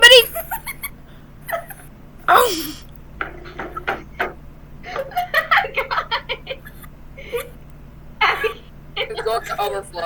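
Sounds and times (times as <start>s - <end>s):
person crying out: 2.3s - 2.8s.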